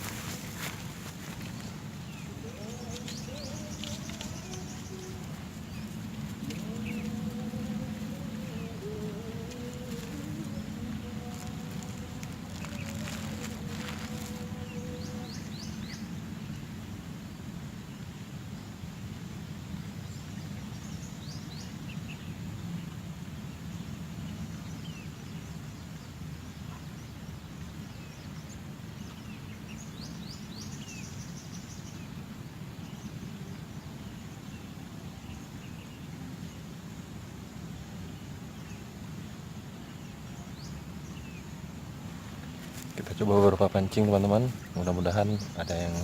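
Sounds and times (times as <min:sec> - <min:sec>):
small birds chirping: 0:00.0 - 0:16.7, 0:19.8 - 0:46.0
steady low rumble: 0:00.0 - 0:17.6.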